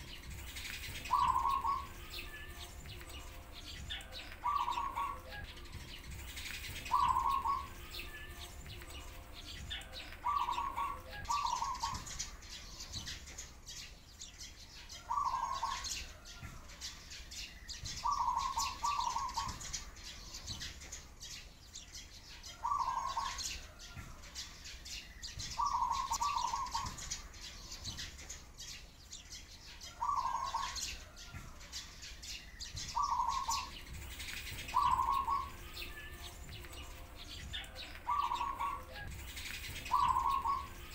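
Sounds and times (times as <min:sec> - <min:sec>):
pigeons cooing: 0:00.0 - 0:13.2, 0:15.0 - 0:16.2, 0:18.0 - 0:19.8, 0:22.5 - 0:23.8, 0:25.5 - 0:27.2, 0:29.9 - 0:31.1, 0:32.9 - 0:40.9
sparrows chirping: 0:00.0 - 0:40.9.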